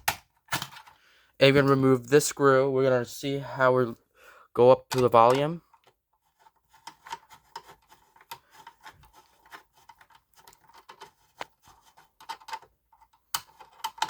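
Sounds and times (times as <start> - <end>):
screwdriver clicks and scrapes: 4.9 - 14.0.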